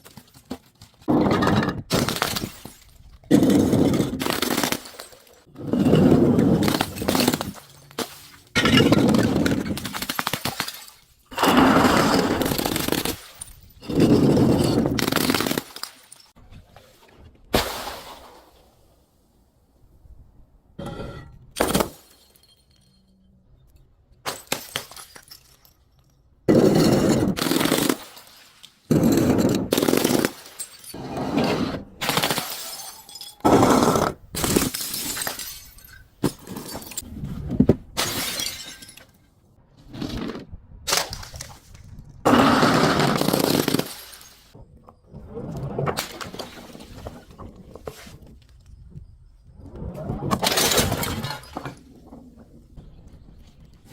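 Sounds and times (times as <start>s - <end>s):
glass bottles smashing: 1.3s - 16.4s, 21.6s - 23.2s, 24.3s - 31.2s, 32.0s - 37.0s, 38.0s - 39.2s, 43.0s - 44.5s, 50.4s - 51.8s.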